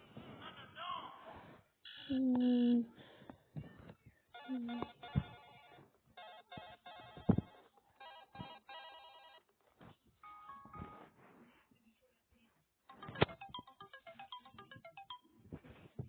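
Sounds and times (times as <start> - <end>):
electronic ringtone: 4.4 - 9.4, 10.2 - 11.2, 12.9 - 15.8.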